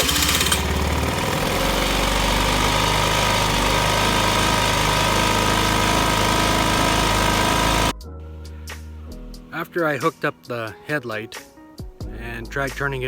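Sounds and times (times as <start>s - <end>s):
small engine running: 0.0s - 7.9s.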